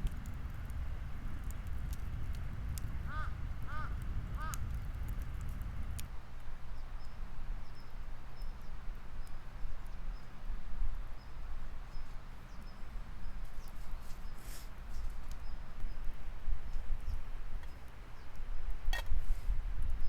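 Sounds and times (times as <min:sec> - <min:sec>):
low rumble of wind or water: 0:00.0 - 0:13.4.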